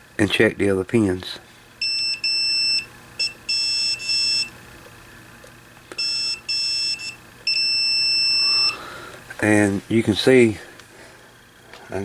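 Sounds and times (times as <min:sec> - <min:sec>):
multimeter continuity beeping: 0:01.8 - 0:04.6, 0:05.9 - 0:08.9.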